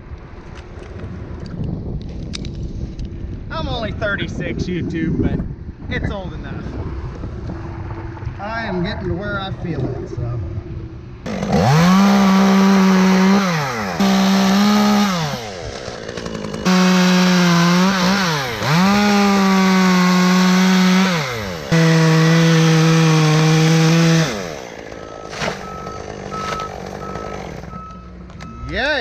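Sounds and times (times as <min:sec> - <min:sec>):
chainsaw cutting wood: 0:11.2 - 0:27.9.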